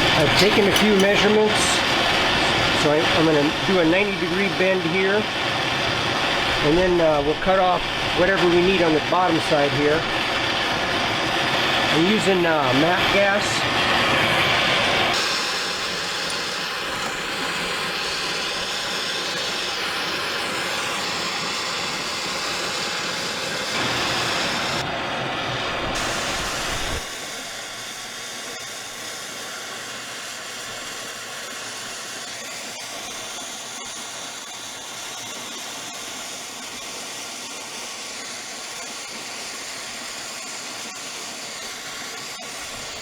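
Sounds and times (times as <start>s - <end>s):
gas torch hissing roar: 0.0s - 43.0s.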